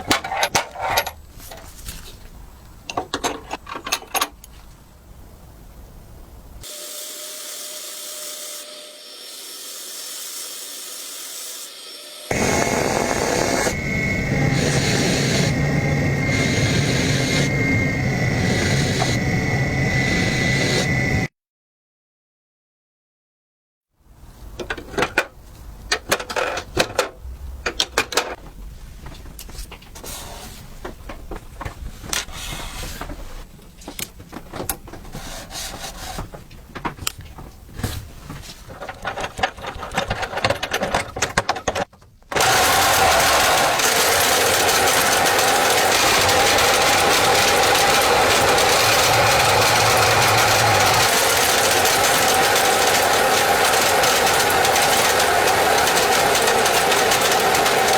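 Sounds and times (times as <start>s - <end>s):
small machine whirring loudly: 6.6s - 21.3s, 42.4s - 57.9s
scattered clicks and knocks: 25.9s - 28.4s, 38.7s - 57.9s.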